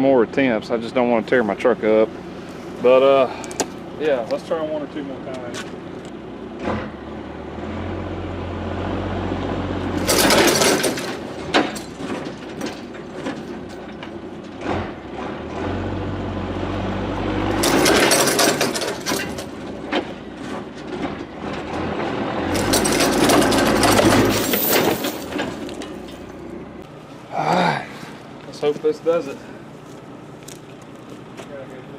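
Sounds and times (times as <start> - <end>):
truck engine revving under load: 5.6 - 27.1.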